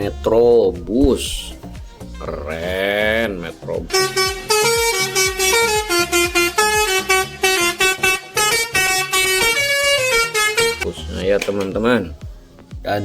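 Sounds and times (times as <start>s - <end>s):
steady drum beat: 0.0s - 7.4s, 9.5s - 13.0s
multi-tone horn melody: 3.9s - 10.9s.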